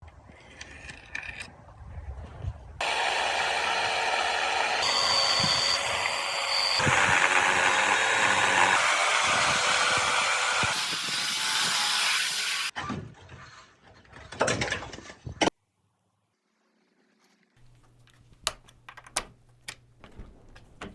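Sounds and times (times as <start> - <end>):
power tool high whine: 2.8 - 12.7
power tools running: 2.8 - 12.7.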